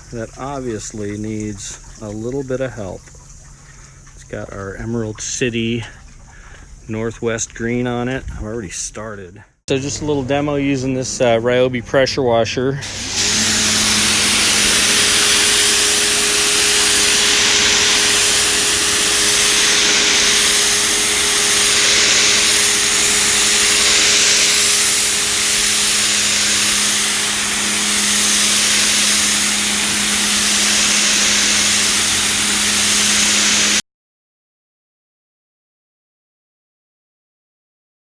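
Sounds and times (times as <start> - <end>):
pressure washer water jet hissing: 0.0 - 8.0, 12.8 - 33.8
electric motor and pump humming: 0.0 - 8.4, 12.6 - 33.8.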